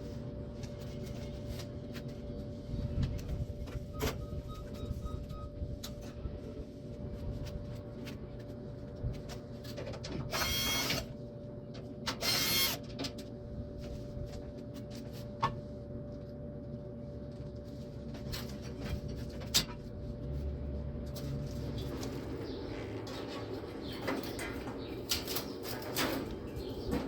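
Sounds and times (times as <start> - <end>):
steady hum: 0.0 - 27.0
power tool whirring: 10.3 - 11.1, 12.1 - 12.8.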